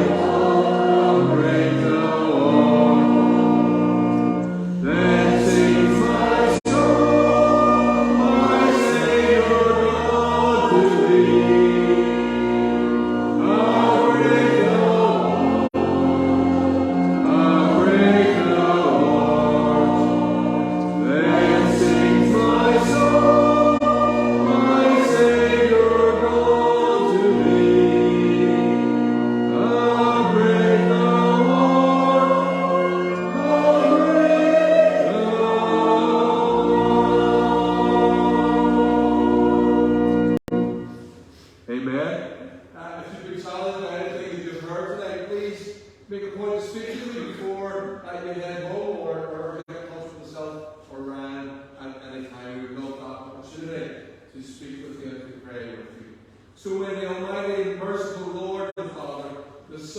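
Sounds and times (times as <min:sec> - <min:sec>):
many voices singing a hymn: 0:00.0 - 0:41.1
sustained held notes: 0:00.0 - 0:41.3.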